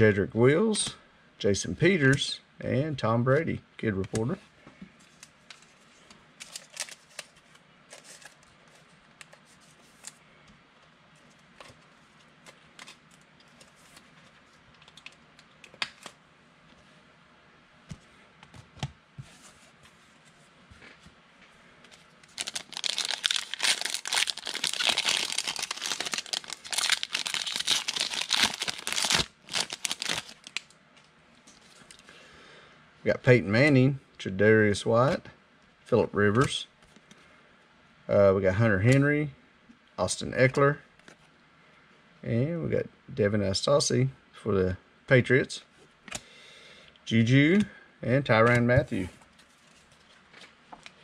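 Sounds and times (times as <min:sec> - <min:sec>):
wrapper tearing and crinkling: 0:06.4 - 0:08.4, 0:22.2 - 0:30.7.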